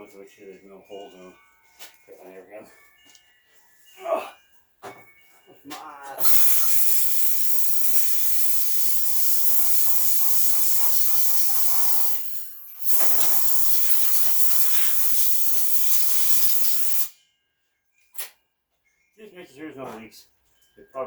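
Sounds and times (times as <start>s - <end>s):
compressed air blowgun hissing: 6.2s - 17.1s.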